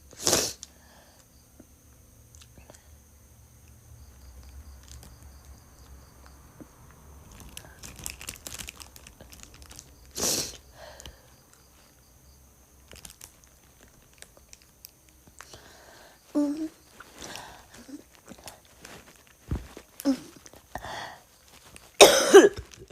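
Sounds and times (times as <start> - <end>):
woman coughing: 22.0 - 22.8.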